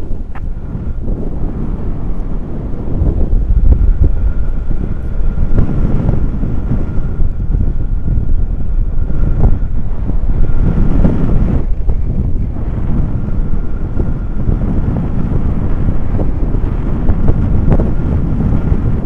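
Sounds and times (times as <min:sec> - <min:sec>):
wind buffeting microphone: 0:00.0 - 0:19.0.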